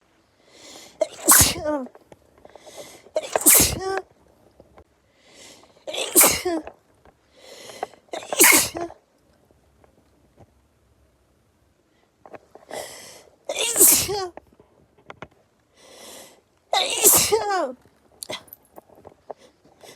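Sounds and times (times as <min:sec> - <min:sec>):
breathy intake before sneeze: 0:00.6 - 0:01.8, 0:02.6 - 0:04.0, 0:05.4 - 0:06.6, 0:12.7 - 0:14.2, 0:16.8 - 0:17.6
person sneezing: 0:00.8 - 0:01.9, 0:03.2 - 0:04.0, 0:05.9 - 0:06.6, 0:08.2 - 0:08.9, 0:13.5 - 0:14.3, 0:16.8 - 0:18.6.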